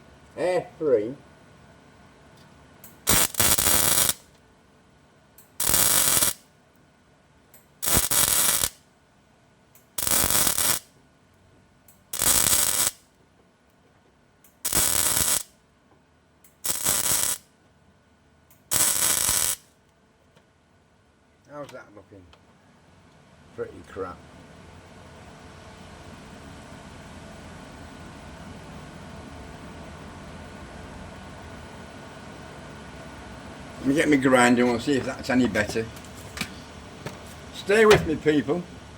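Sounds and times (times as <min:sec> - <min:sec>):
crackling tack welds: 0:02.9 - 0:04.3, 0:05.4 - 0:06.5, 0:07.8 - 0:08.8, 0:09.8 - 0:10.9, 0:12.0 - 0:13.1, 0:14.5 - 0:15.6, 0:16.5 - 0:17.5, 0:18.5 - 0:19.8.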